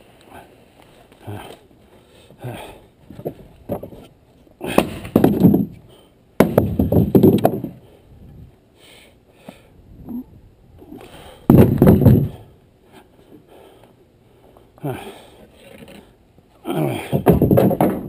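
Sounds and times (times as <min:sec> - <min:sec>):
hard objects knocking and clattering: 0:03.1 - 0:04.1, 0:04.8 - 0:05.8, 0:06.4 - 0:07.8, 0:11.5 - 0:12.4, 0:17.1 - 0:18.0.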